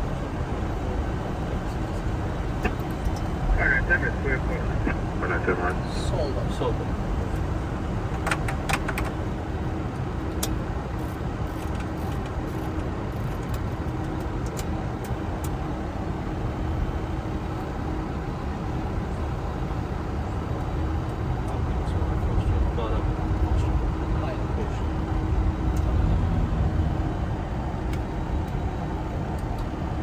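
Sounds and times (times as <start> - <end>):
faint steady hum: 0.0 - 7.9
cockpit low rumble: 0.0 - 11.3, 12.9 - 30.0.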